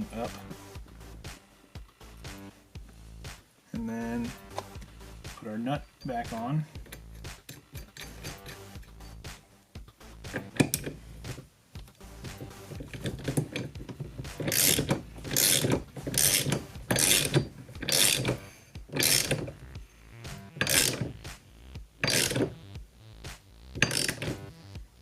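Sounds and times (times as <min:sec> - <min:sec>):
ratchet wrench clicking: 0:06.8 - 0:09.2, 0:12.7 - 0:19.6, 0:20.6 - 0:21.2, 0:22.0 - 0:22.6, 0:23.8 - 0:24.5.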